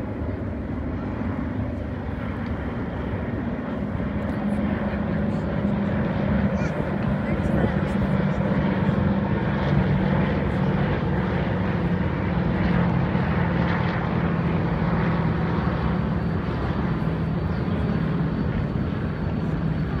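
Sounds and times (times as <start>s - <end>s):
propeller plane flying over: 0.0s - 20.0s.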